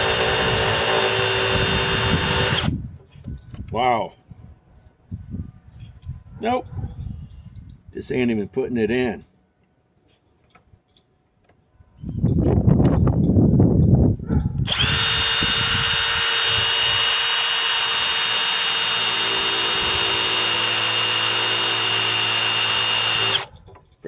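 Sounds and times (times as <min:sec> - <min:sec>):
impact driver hammering and whining: 0:00.0 - 0:02.8, 0:14.6 - 0:23.7.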